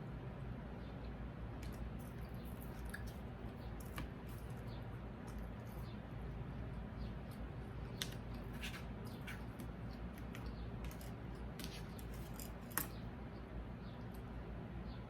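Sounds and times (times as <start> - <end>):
chewing and mouth noises: 2.5 - 3.2.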